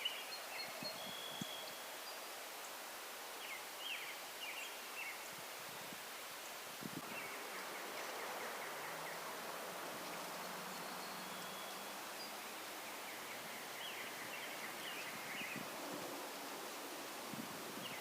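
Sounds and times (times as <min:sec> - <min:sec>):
steady rushing hiss: 0:01.6 - 0:18.0
faint high chirps: 0:10.1 - 0:15.6.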